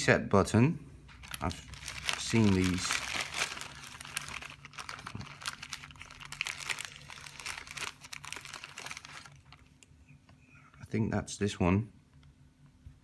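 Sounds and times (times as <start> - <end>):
plastic bag crinkling: 1.1 - 9.9.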